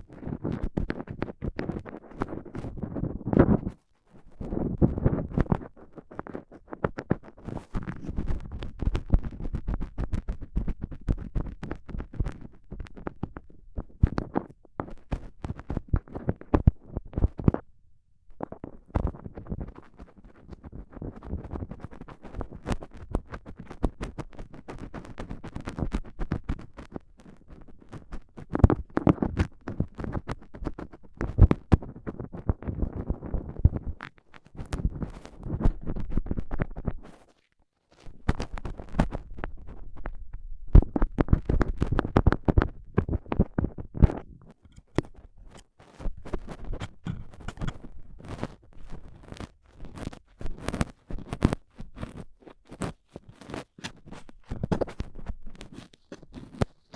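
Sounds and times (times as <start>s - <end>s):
metal tool scraping in ear: 44.6s - 45.7s, 46.3s - 47.9s.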